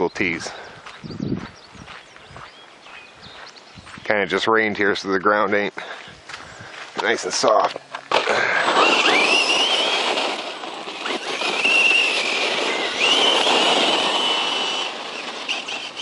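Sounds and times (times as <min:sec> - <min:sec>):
electric motor whining: 0:08.1 - 0:16.0.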